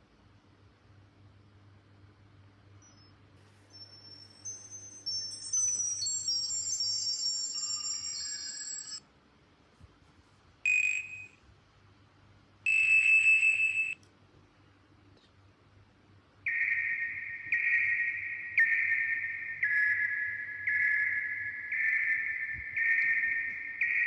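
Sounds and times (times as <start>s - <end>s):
phone ringtones and alert tones: 3.7s - 9.0s, 16.5s - 24.0s
repeating electronic tones: 3.7s - 9.0s
steady beep: 3.7s - 9.0s, 12.7s - 14.0s, 16.5s - 24.0s.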